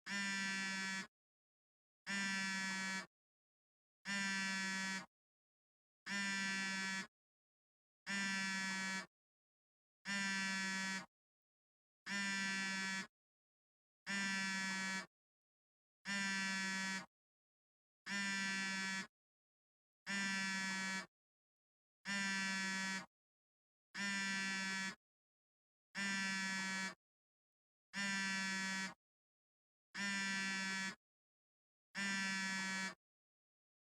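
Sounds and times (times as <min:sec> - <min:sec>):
smartphone vibrating: 0:00.1 - 0:01.1, 0:02.1 - 0:03.1, 0:04.1 - 0:05.1, 0:06.1 - 0:07.1, 0:08.1 - 0:09.1, 0:10.1 - 0:11.1, 0:12.1 - 0:13.1, 0:14.1 - 0:15.1, 0:16.1 - 0:17.1, 0:18.1 - 0:19.1, 0:20.1 - 0:21.1, 0:22.0 - 0:23.1, 0:24.0 - 0:25.0, 0:26.0 - 0:27.0, 0:27.9 - 0:29.0, 0:30.0 - 0:31.0, 0:32.0 - 0:33.0.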